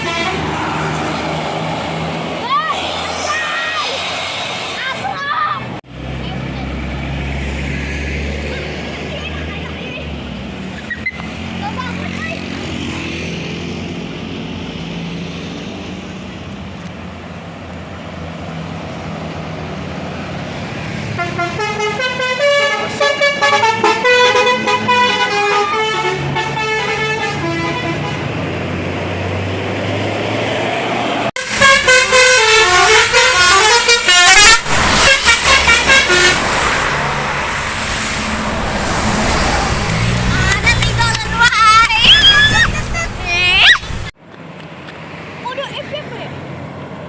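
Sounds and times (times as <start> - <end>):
multi-tone bus horn tune: 0.0 - 1.0, 21.1 - 28.7, 31.4 - 37.6
bus engine running: 16.3 - 47.0.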